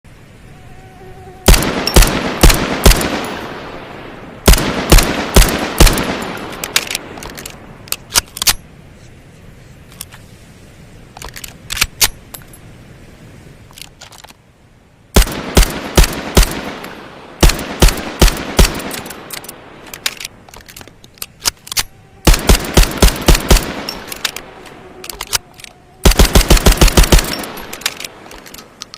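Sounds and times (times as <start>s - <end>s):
suppressed pistol shots: 1.5s - 3.7s, 4.5s - 7.5s, 15.2s - 20.2s, 22.3s - 24.5s, 26.0s - 28.5s.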